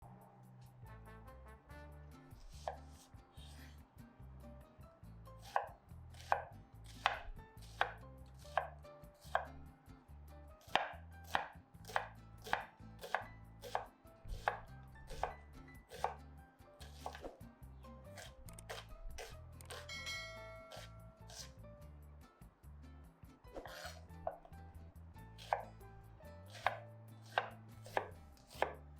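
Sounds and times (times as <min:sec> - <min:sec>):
knife chopping on cutting board: 0:02.4 - 0:03.8, 0:05.4 - 0:09.6, 0:10.6 - 0:16.2, 0:16.8 - 0:17.4, 0:18.2 - 0:19.9, 0:20.6 - 0:21.5, 0:23.5 - 0:24.6, 0:25.4 - 0:25.7, 0:26.4 - 0:28.8.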